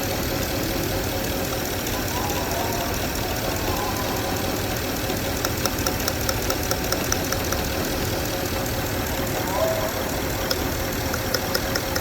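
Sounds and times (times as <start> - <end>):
car engine idling: 0.0 - 12.0
sharp evenly spaced ticks: 0.0 - 12.0.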